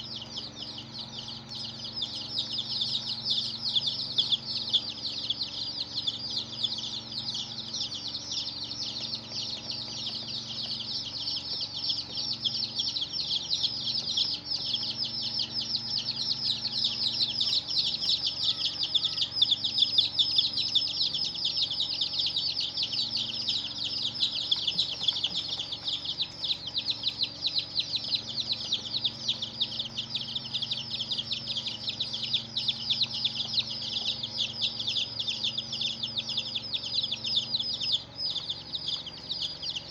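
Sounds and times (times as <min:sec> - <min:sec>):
baby chicks peeping: 0:00.0 - 0:39.9.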